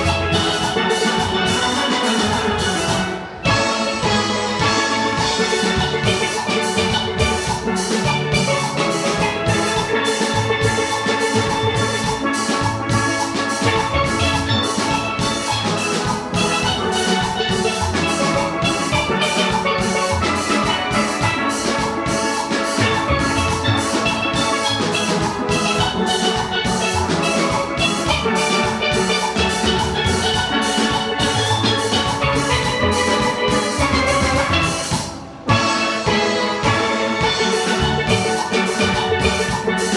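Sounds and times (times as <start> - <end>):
drum kit beat: 0.0 - 39.9
steelpans playing in harmony: 0.0 - 39.9.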